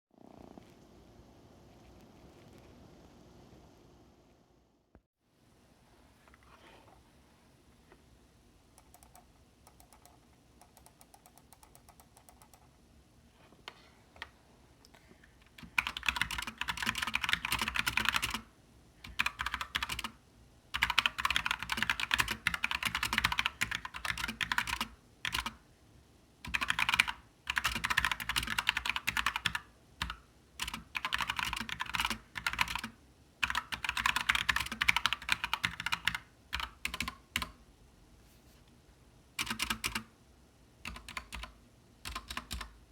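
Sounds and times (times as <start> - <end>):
mechanical keyboard typing: 8.8 - 12.7, 15.5 - 20.2, 20.8 - 25.6, 26.5 - 37.6, 39.4 - 40.1, 40.8 - 42.8.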